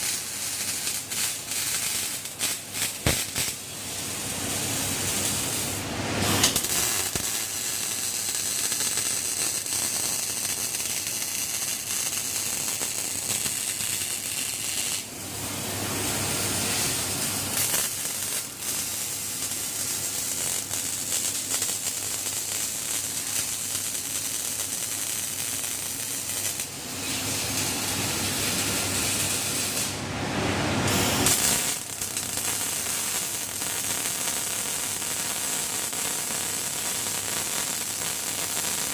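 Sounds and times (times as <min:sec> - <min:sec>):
welding arc crackling and hissing: 0:00.0 - 0:38.9.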